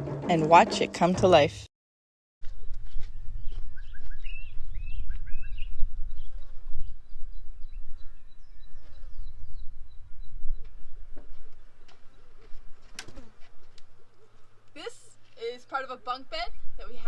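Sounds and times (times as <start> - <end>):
wind buffeting microphone: 2.5 - 14.6, 15.7 - 17.0
birds chirping: 2.5 - 17.0.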